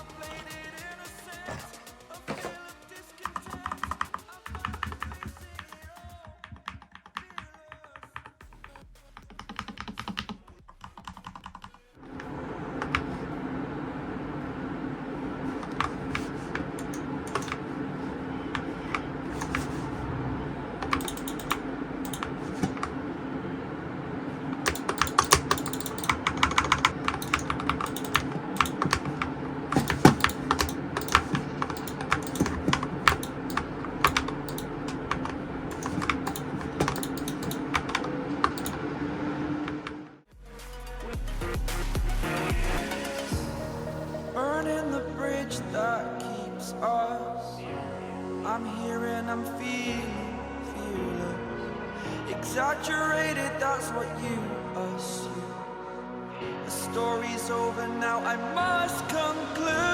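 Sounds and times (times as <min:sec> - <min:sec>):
keyboard keystroke clacks: 0:03.3 - 0:08.3, 0:15.6 - 0:17.6, 0:20.8 - 0:23.0, 0:24.6 - 0:38.8.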